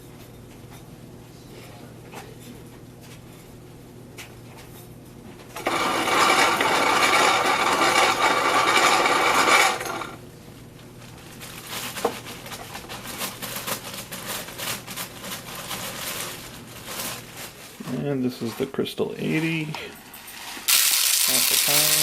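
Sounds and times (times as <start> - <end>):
grain poured into container: 20.7 - 22.0.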